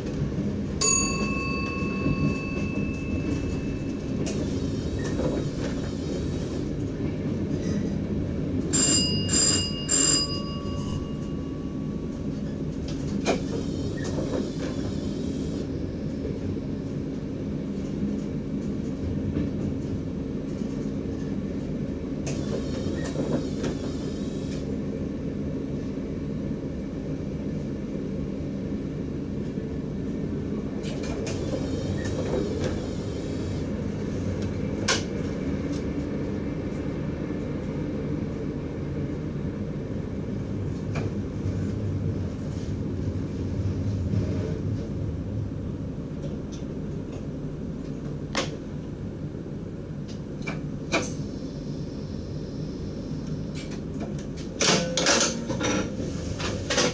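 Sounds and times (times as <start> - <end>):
electric train rumble: 0.0 - 56.9
bell-like chime: 0.8 - 3.9.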